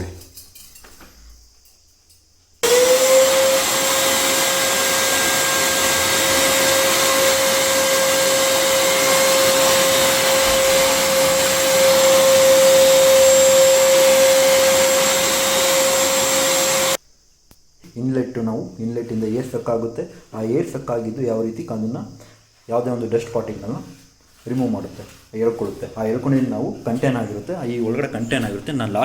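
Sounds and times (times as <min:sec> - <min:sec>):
vacuum cleaner running: 0:02.6 - 0:17.0.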